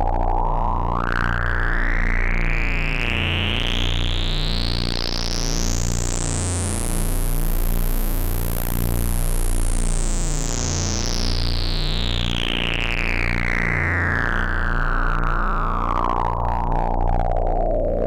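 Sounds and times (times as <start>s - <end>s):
synthesizer low drone: 14.3s - 18.0s.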